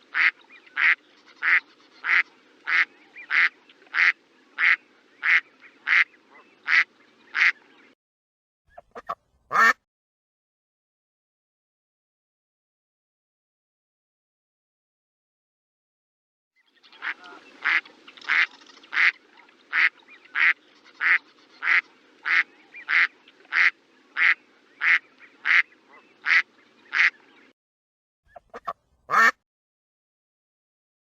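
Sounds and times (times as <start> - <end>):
duck quacking: 0.1 - 7.6, 8.8 - 9.8, 17.0 - 27.2, 28.3 - 29.4.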